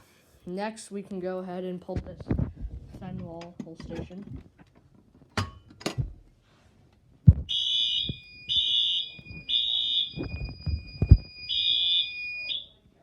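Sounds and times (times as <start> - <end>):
fire alarm horn beeping: 7.5 - 12.8.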